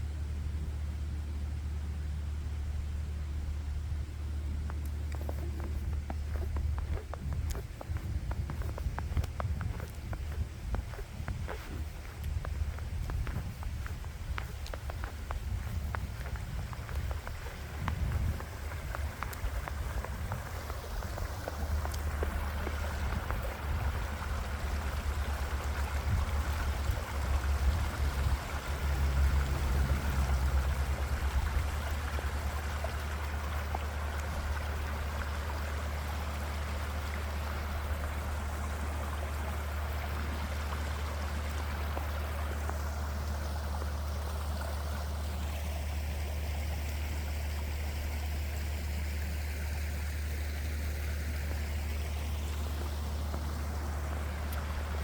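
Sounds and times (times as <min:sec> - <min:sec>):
creek water trickling: 0:01.8 - 0:55.0.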